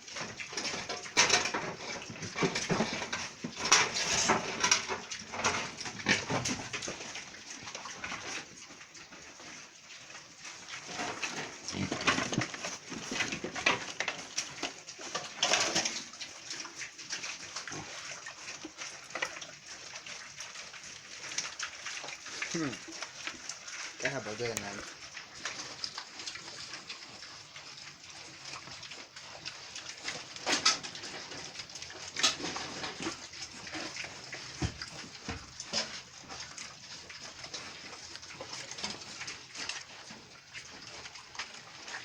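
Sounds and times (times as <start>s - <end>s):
pigs calling: 5.7s - 13.5s.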